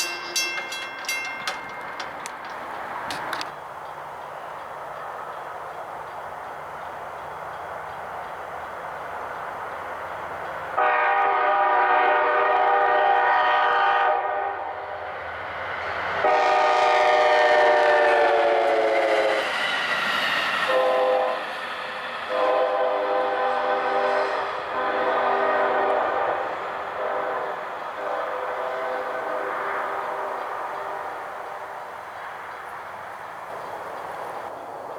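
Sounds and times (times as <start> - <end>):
locomotive air horn blasts: 10.8 - 14.8, 16.2 - 19.5, 20.7 - 21.4, 22.3 - 31.2.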